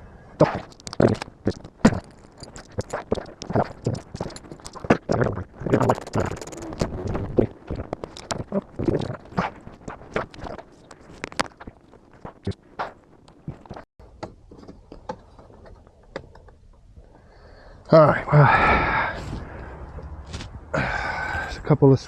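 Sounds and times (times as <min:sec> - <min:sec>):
rustling and scraping: 0:00.4 - 0:13.9.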